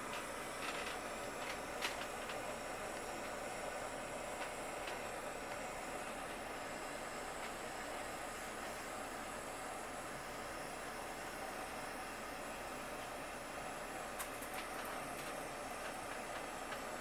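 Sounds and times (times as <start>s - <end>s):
soldering torch flame hissing: 0.0s - 17.0s.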